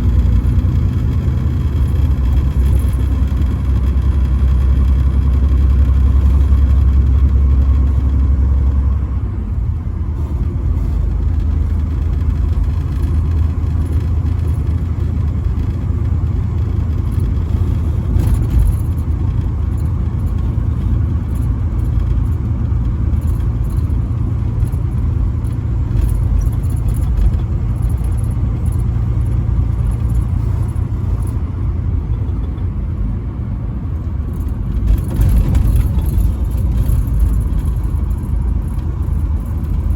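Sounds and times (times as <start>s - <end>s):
road noise: 0.0s - 39.9s
truck engine drone: 0.0s - 39.9s.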